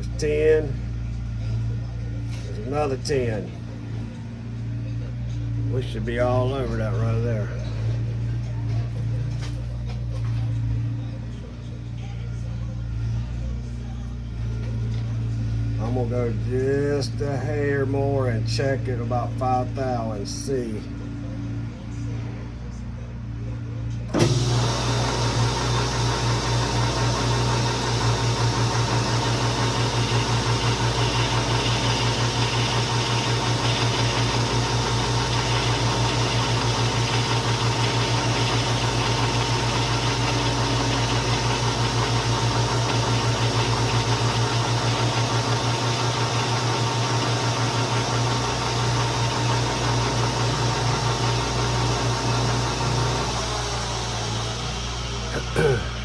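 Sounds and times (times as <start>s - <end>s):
lathe running with pulsing hum: 24.0s - 56.0s.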